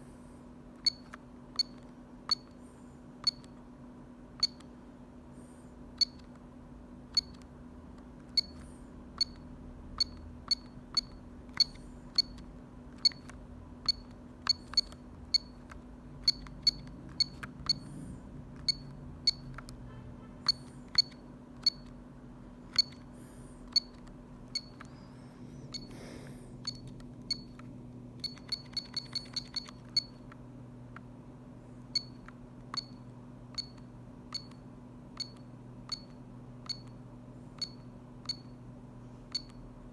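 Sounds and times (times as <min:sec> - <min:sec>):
faint steady hum: 0:00.0 - 0:39.9
telephone key beeps: 0:00.8 - 0:02.5, 0:10.0 - 0:12.4, 0:13.0 - 0:17.9, 0:18.6 - 0:19.7, 0:20.4 - 0:21.9, 0:22.7 - 0:23.0, 0:23.7 - 0:24.9, 0:26.6 - 0:27.6, 0:28.2 - 0:30.3, 0:32.0 - 0:34.6, 0:35.2 - 0:37.0, 0:39.3 - 0:39.6.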